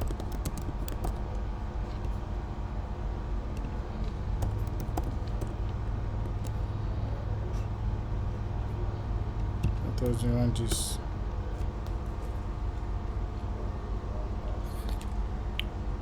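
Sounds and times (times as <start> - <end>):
keyboard key clicks: 0.0 - 1.4, 4.4 - 6.6
low background rumble: 0.0 - 14.6.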